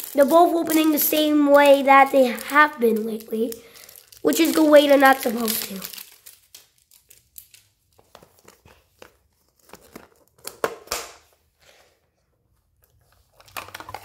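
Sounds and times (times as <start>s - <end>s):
plastic packaging crinkling: 0.0s - 11.4s, 12.8s - 14.0s.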